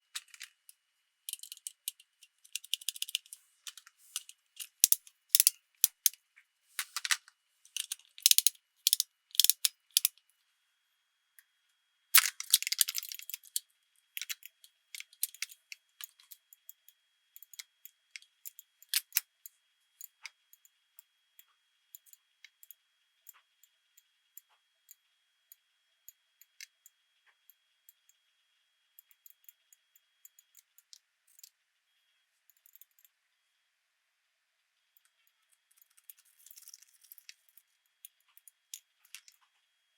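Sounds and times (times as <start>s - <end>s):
plastic toy pieces clicking: 1.3s - 6.2s, 6.8s - 10.1s, 12.2s - 13.6s, 14.2s - 16.4s, 18.5s - 19.2s.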